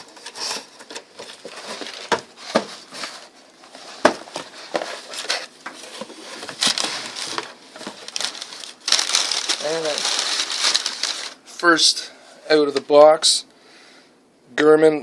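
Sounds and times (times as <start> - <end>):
packing rustling and crinkling: 0.0 - 11.5.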